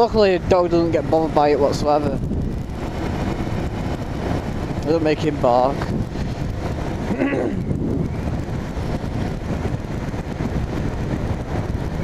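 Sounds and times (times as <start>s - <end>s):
wind buffeting microphone: 0.0s - 12.0s
man making short vocal sound: 7.1s - 7.7s.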